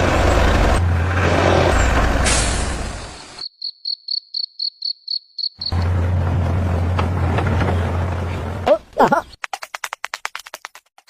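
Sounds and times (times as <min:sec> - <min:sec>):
cricket chirping: 0:03.2 - 0:05.8.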